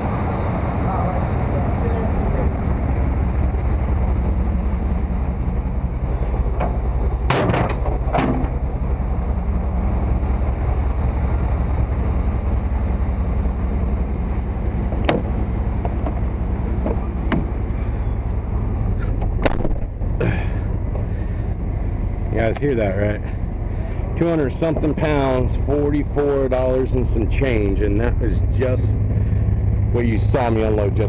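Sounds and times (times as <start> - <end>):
vehicle engine rumbling: 0.0 - 31.0
sharp clicks and knocks: 6.6 - 8.6, 14.9 - 17.5.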